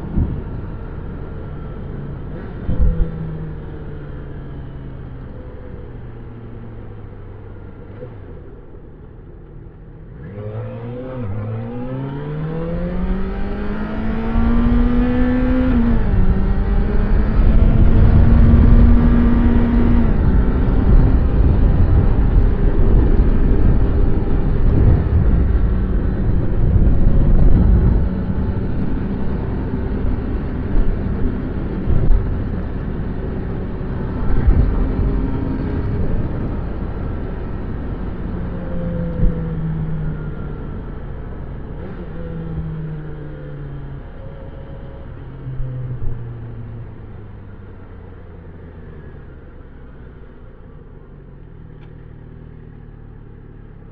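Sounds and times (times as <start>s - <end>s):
motorcycle engine revving: 10.1s - 40.5s.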